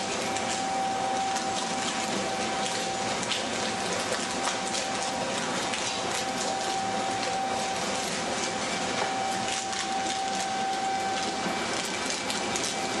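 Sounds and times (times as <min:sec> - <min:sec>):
machine whirr with held tone: 0:00.0 - 0:13.0.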